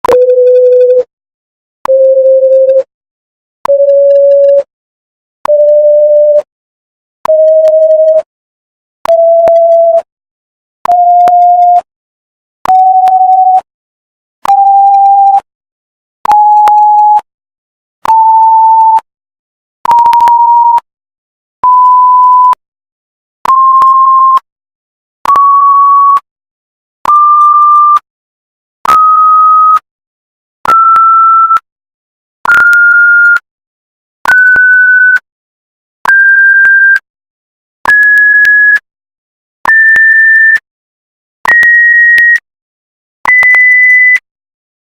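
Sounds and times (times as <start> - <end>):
sine-tone censor beeps rising in pitch: 43.3 - 44.2.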